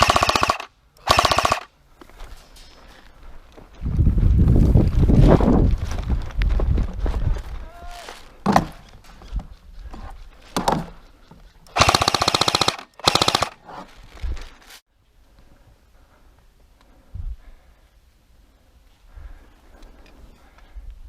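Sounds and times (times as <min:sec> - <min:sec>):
airsoft rifle shots: 0:00.0 - 0:01.7, 0:11.7 - 0:13.6.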